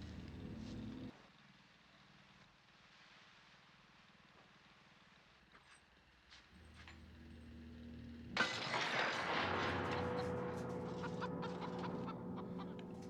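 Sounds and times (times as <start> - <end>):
low droning tones: 6.6 - 13.0.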